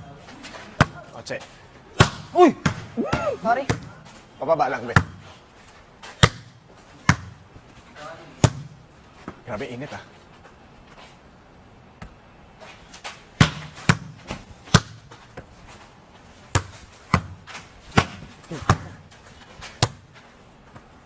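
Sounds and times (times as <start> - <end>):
volleyball being smacked by hand: 2.0 - 4.0, 6.0 - 7.4, 8.4 - 9.4, 13.0 - 15.5, 16.5 - 19.1, 19.7 - 20.9.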